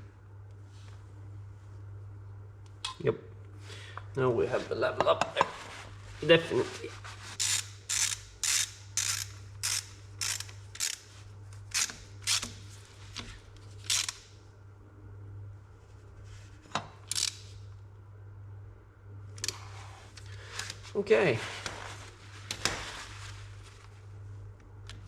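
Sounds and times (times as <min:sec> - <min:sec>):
hand ratchet clicking: 0:07.4 - 0:11.0, 0:11.7 - 0:12.6, 0:13.8 - 0:14.3, 0:17.1 - 0:17.4.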